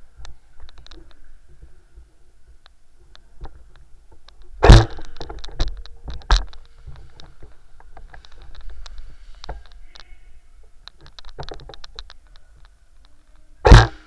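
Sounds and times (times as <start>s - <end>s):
sharp crack: 4.2s - 7.3s, 13.6s - 14.0s
loud thump: 4.6s - 5.1s, 13.7s - 14.0s
clicks and knocks: 10.8s - 13.1s.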